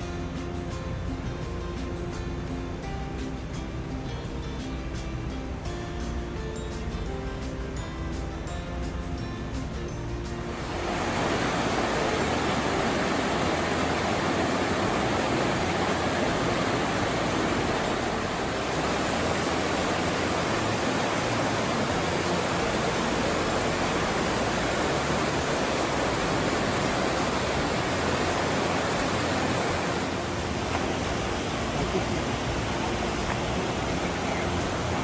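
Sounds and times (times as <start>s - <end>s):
waterfall rushing: 10.4s - 35.0s.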